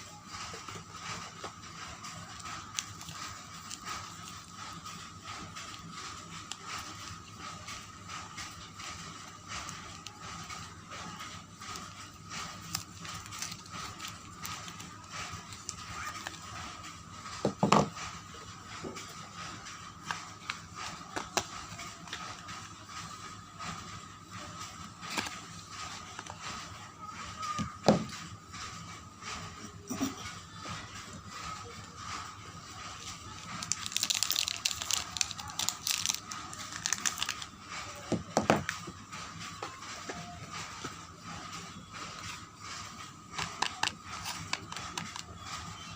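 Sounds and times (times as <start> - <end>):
wrapper crinkling and tearing: 2.2 - 7.1, 11.8 - 16.6, 33.2 - 37.6
packaging crinkling and tapping: 11.8 - 16.6, 20.0 - 22.5, 33.3 - 38.8, 43.4 - 45.4.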